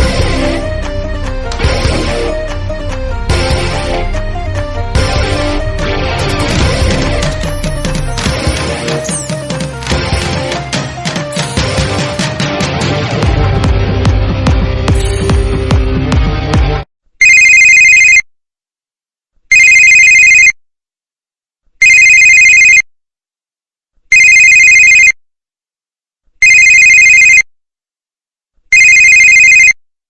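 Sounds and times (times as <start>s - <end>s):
music track: 0.0s - 16.9s
phone ringtone two-tone warble: 17.2s - 18.2s, 28.8s - 29.8s.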